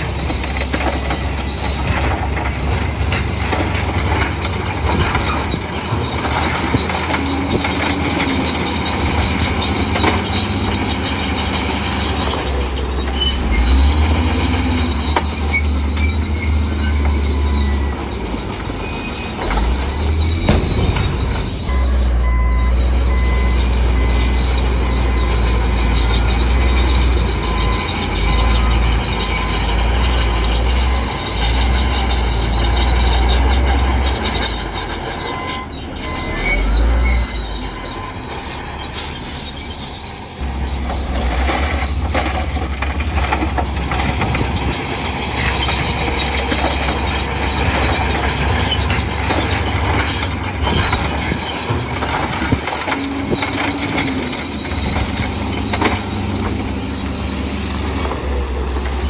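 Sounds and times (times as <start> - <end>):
diesel engine droning: 0.0 - 59.0
steel tracks squealing: 0.0 - 59.0
metallic din: 19.6 - 23.8.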